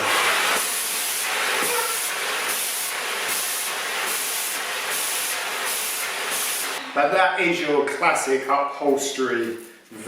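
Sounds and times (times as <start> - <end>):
vacuum cleaner suction: 0.0 - 7.2.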